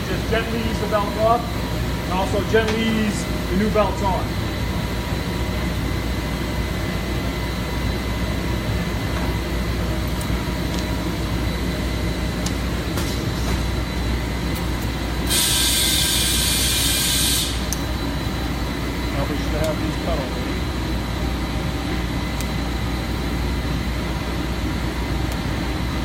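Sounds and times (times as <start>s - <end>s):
shop machinery droning: 0.0s - 26.0s
loud hiss of escaping air: 15.2s - 17.7s.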